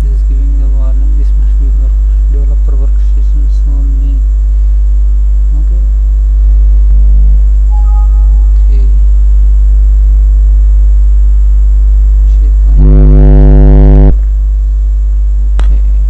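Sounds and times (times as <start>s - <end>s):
electrical mains hum: 0.0s - 16.0s.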